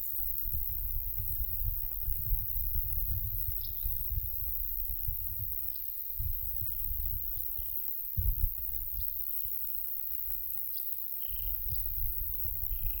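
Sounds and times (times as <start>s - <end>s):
high-pitched insect hiss: 0.0s - 13.0s
wind buffeting microphone: 0.4s - 7.5s, 8.2s - 9.1s, 11.4s - 13.0s.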